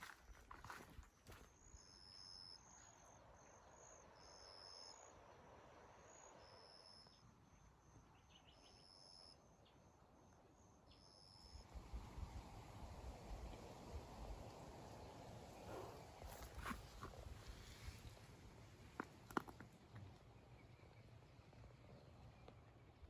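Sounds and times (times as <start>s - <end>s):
footsteps: 0.0s - 1.5s
insects chirping: 0.0s - 19.6s.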